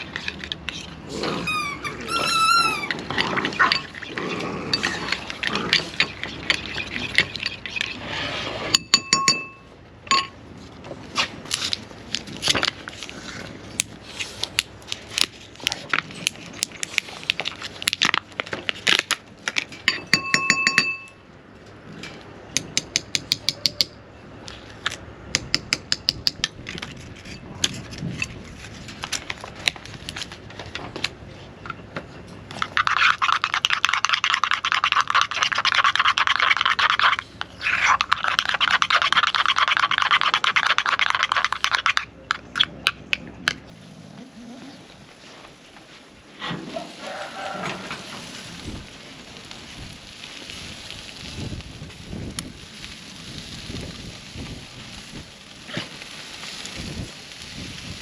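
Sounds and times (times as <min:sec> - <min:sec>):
short ringing clink: 0:08.9 - 0:10.4, 0:19.9 - 0:21.2
dense crackle of small clicks: 0:47.8 - 0:58.0.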